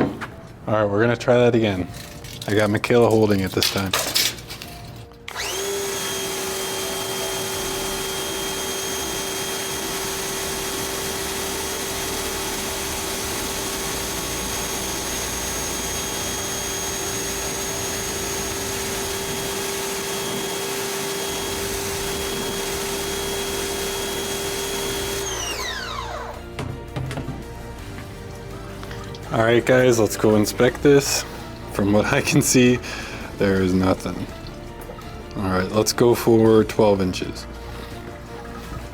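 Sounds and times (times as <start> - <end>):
pressure washer motor whine: 5.3 - 26.7
water jet hissing: 5.4 - 25.8.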